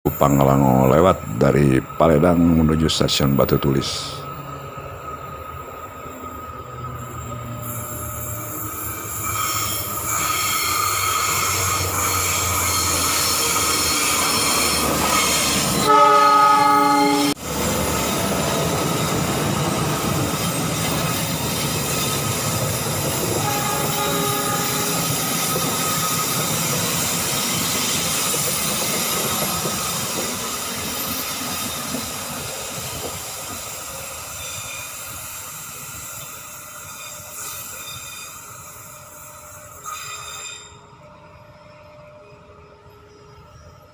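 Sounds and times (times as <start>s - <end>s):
train rumble and wheels on rails: 0.0s - 43.9s
locomotive horn: 15.2s - 17.4s, 23.2s - 25.4s.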